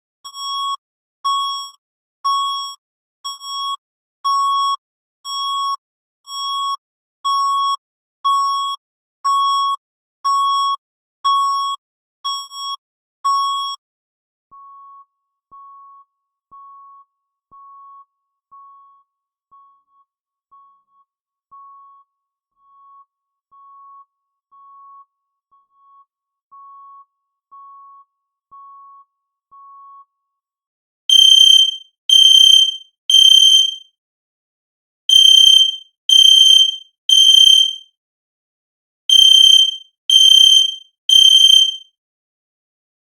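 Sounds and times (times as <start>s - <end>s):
electronic alarm beeping: 31.1s - 33.8s, 35.1s - 37.8s, 39.1s - 41.8s.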